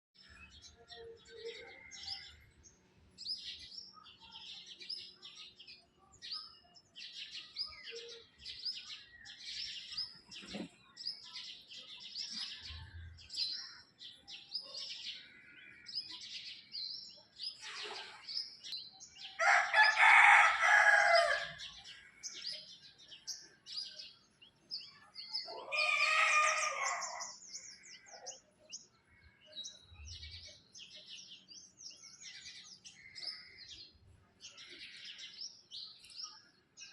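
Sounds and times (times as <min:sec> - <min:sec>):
birds chirping: 0:00.2 - 0:36.9
loud long bird calls: 0:25.4 - 0:28.6.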